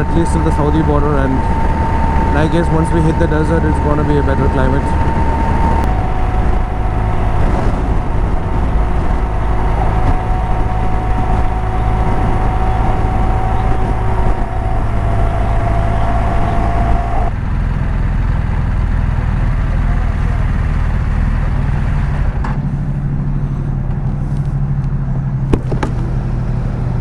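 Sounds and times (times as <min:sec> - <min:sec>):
wind rushing on microphone: 0:00.0 - 0:17.4
steady whine: 0:00.0 - 0:17.9, 0:19.9 - 0:27.0
motorcycle engine drone: 0:00.0 - 0:27.0.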